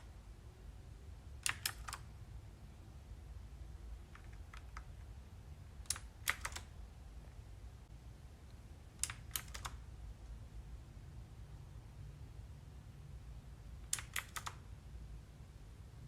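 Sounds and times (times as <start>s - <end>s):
faint low hum: 0.0s - 16.0s
mechanical keyboard keys clicking: 1.4s - 2.1s, 4.1s - 5.0s, 5.8s - 6.7s, 9.0s - 9.8s, 13.9s - 14.6s.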